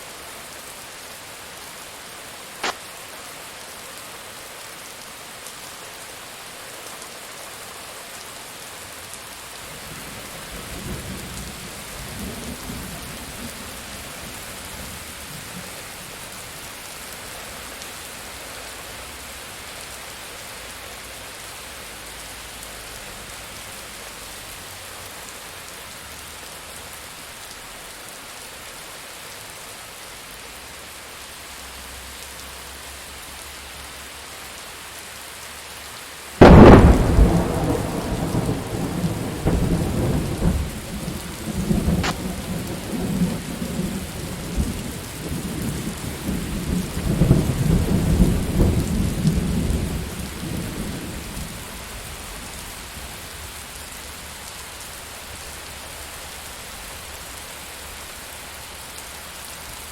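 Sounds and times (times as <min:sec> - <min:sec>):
steady rain: 0:00.0 - 0:59.9
thunderclap and rumble: 0:36.4 - 0:51.4.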